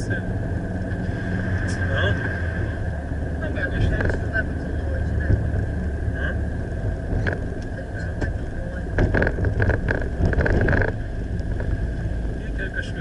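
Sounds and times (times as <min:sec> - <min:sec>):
road and wind rumble: 0:00.0 - 0:13.0
crackling ticks: 0:07.2 - 0:12.1.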